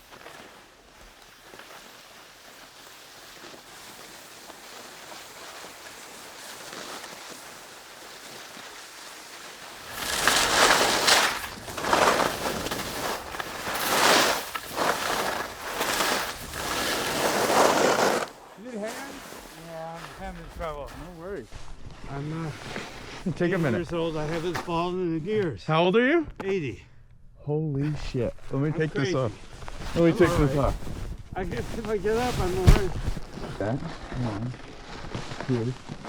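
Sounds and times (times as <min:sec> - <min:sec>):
skis scraping over snow: 0:00.0 - 0:25.5, 0:28.1 - 0:36.0
faint outdoor hiss: 0:18.3 - 0:34.6.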